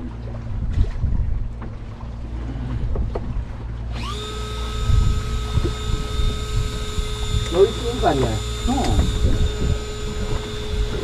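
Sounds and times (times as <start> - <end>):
boat engine humming: 0.0 - 11.0
small motor whining: 3.9 - 11.0.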